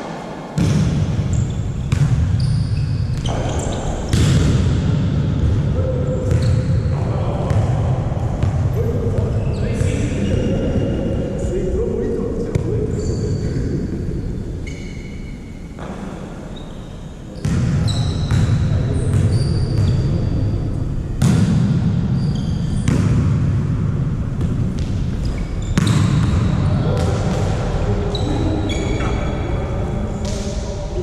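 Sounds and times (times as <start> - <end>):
volleyball hits: 0.0 - 2.4, 3.1 - 5.6, 21.2 - 22.0, 22.7 - 27.6
shoe squeaks on court: 1.3 - 4.2, 14.6 - 15.9, 16.5 - 20.3, 22.1 - 23.0, 25.2 - 26.3, 28.1 - 29.4.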